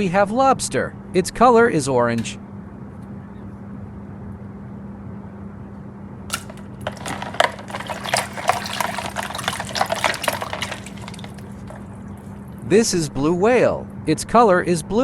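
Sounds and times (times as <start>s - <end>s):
water splashing and sloshing: 6.3s - 12.7s.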